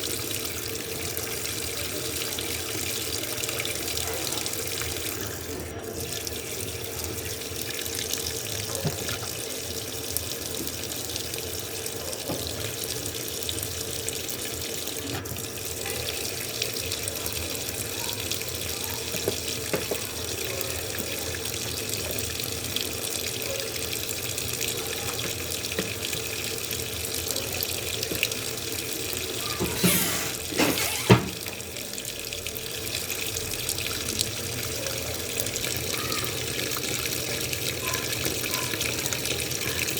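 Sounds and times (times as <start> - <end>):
washing machine filling with water: 0.0 - 39.9.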